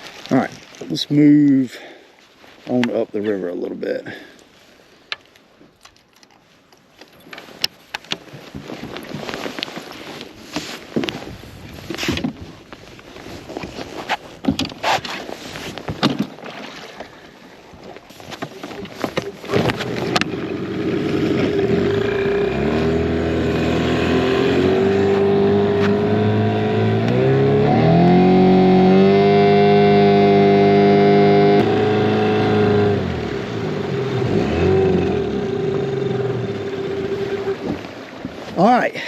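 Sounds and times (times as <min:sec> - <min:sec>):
outboard motor starting and running: 0:18.1 - 0:38.8.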